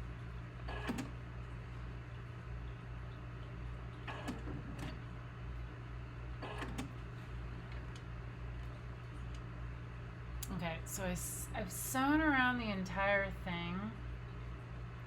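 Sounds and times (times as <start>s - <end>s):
sewing machine running: 0.7s - 1.1s.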